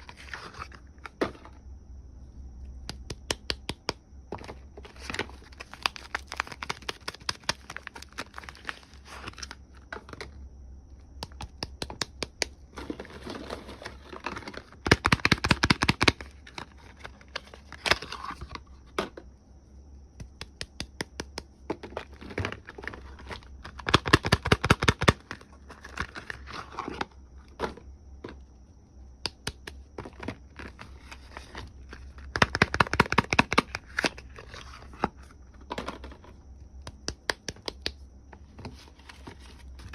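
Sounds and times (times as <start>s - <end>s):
wrapping crinkling and tearing: 5.0s - 9.6s.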